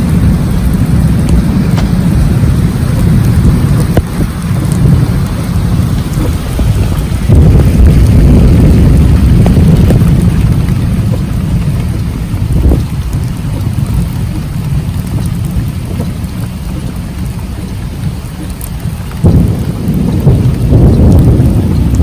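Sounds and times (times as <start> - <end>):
storm wind buffeting microphone: 0.0 - 22.0.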